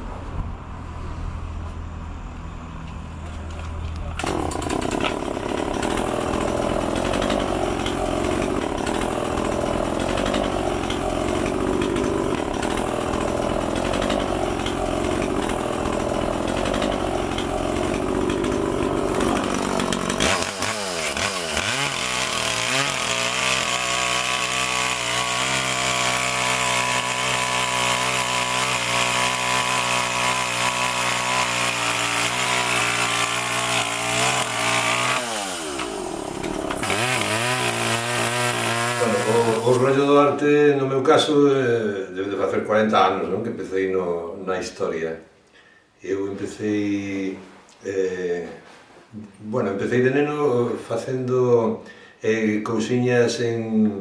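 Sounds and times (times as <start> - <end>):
chainsaw carving wood: 3.4 - 40.5.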